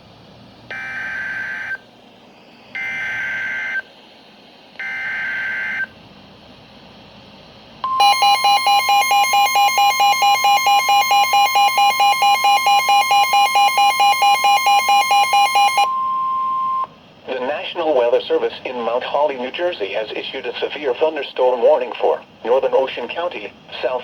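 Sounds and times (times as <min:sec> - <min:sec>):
steady warning alarm tone: 0:07.8 - 0:17.0
rapid electronic alarm beeps: 0:07.9 - 0:16.9.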